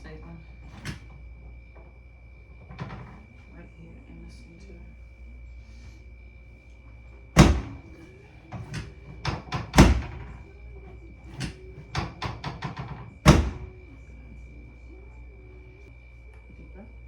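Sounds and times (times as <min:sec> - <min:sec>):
drop table thuds: 0:07.4 - 0:10.4.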